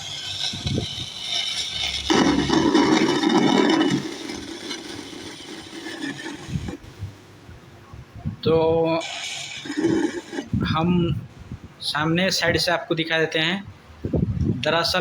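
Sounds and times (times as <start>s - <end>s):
speakers static hiss: 0.0s - 11.3s.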